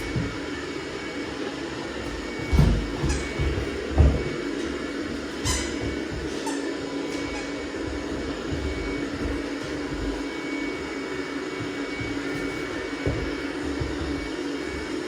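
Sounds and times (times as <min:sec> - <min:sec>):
robot vacuum cleaner humming: 0:00.0 - 0:15.0.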